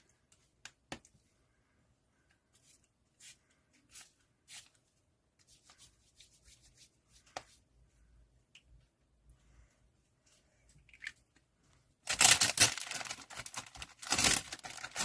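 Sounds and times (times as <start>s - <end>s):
rustling of packing material: 12.0s - 15.0s.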